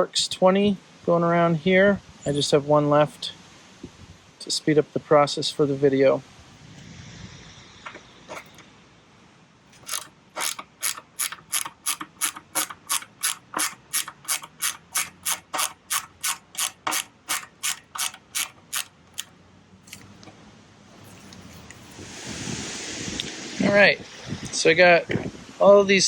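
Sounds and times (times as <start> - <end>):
ratchet clicking: 9.8 - 19.3.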